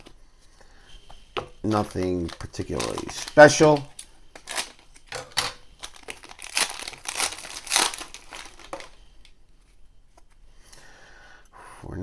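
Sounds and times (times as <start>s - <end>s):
card pack wrapper crinkling and tearing: 1.7s - 9.3s.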